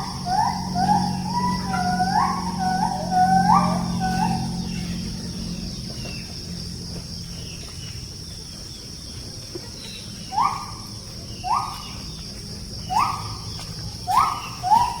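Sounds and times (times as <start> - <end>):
gibbons whooping: 0.0 - 5.5, 10.3 - 12.1, 12.8 - 15.0
high insect drone: 0.0 - 15.0.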